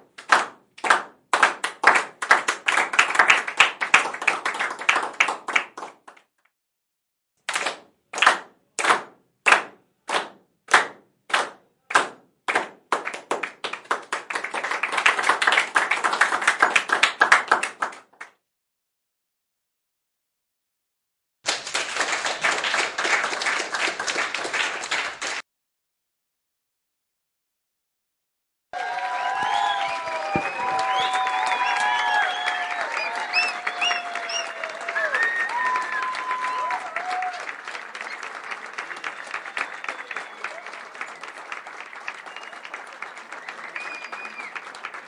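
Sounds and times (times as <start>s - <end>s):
crowd applause: 0.3s - 6.1s, 13.0s - 18.0s, 21.5s - 25.4s, 28.8s - 45.0s
long held whistles: 29.2s - 36.7s, 39.4s - 40.6s, 42.2s - 44.6s.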